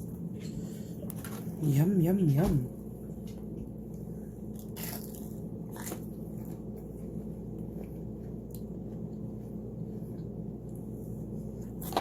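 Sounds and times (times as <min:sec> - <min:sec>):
steady low hum: 0:00.0 - 0:12.0
biting and chewing food: 0:03.2 - 0:12.0.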